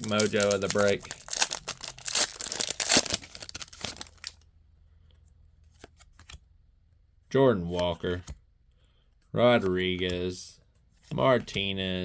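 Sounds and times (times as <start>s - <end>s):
foil wrapper tearing and crinkling: 0.0s - 4.4s.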